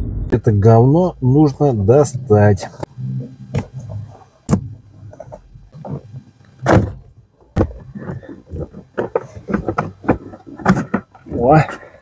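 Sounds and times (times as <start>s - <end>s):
parts knocking and clicking: 3.5s - 11.9s.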